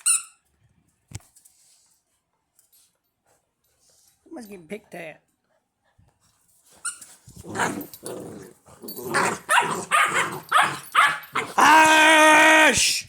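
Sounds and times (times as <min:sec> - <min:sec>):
puppies barking and growling: 0:07.4 - 0:11.6.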